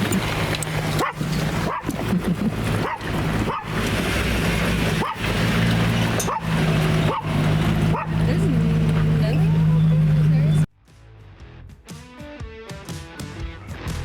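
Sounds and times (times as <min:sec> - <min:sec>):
vehicle engine hum: 0:00.0 - 0:10.7.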